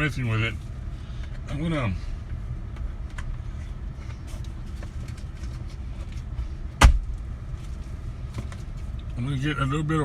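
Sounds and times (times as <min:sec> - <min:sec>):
truck idling from inside cabin: 0:00.0 - 0:10.0
sharp thump: 0:06.8 - 0:07.1.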